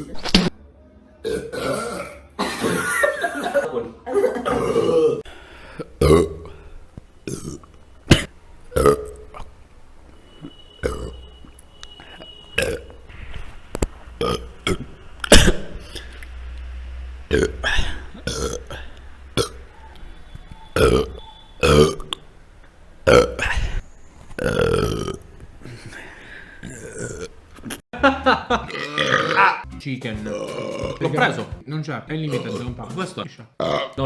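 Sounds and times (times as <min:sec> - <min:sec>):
men burping: 0:01.2 - 0:06.7, 0:14.2 - 0:16.1, 0:17.3 - 0:19.6, 0:20.8 - 0:22.2, 0:23.1 - 0:23.8, 0:24.4 - 0:27.8, 0:28.5 - 0:29.7, 0:30.3 - 0:31.1, 0:32.3 - 0:32.6, 0:33.6 - 0:34.0.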